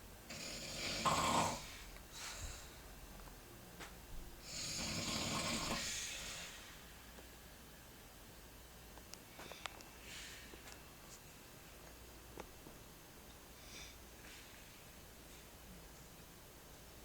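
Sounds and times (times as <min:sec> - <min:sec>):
person snoring: 0:00.3 - 0:01.8, 0:04.4 - 0:06.2.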